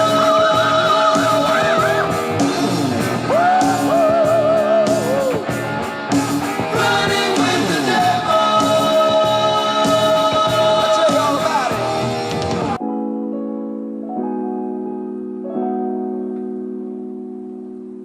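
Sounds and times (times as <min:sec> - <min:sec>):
rock song with singing and guitar: 0:00.0 - 0:12.8
piano piece: 0:12.6 - 0:18.0.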